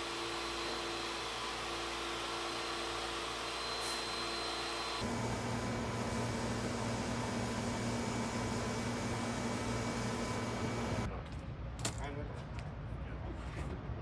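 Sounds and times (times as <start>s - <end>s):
machinery whirring: 0.0s - 11.1s
machine low hum: 4.9s - 11.1s.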